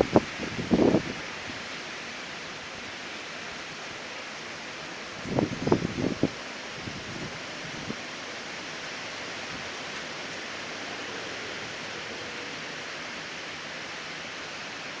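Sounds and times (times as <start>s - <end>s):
strong wind blowing: 0.0s - 1.6s, 5.2s - 8.0s.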